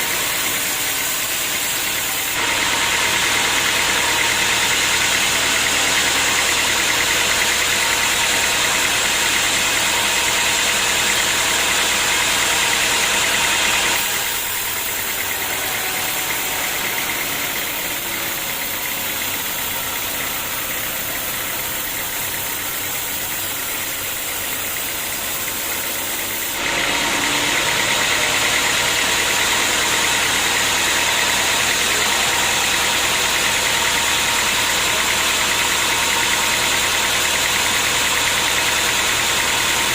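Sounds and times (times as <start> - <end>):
sawmill machinery drone: 0.0 - 39.9.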